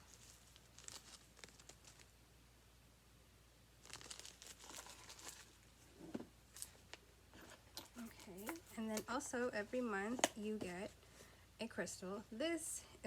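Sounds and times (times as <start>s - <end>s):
packaging crinkling: 0.0s - 2.1s, 3.8s - 9.1s.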